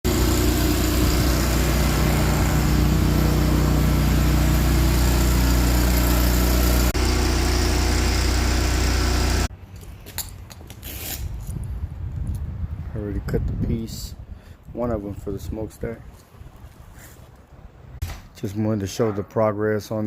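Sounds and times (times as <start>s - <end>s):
engine running steadily: 0.0s - 9.5s.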